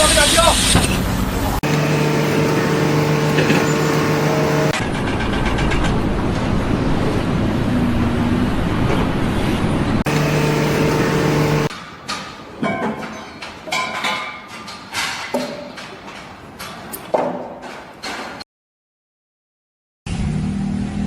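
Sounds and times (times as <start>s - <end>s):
motor humming: 1.6s - 4.8s, 10.1s - 11.7s.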